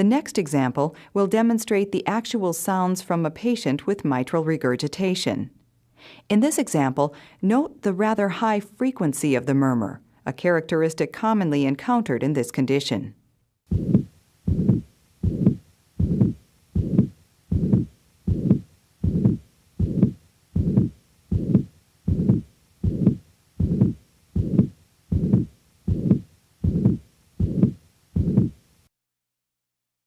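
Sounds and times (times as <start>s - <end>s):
heart sounds: 13.7s - 28.6s
high-pitched heart murmur: 13.7s - 28.6s.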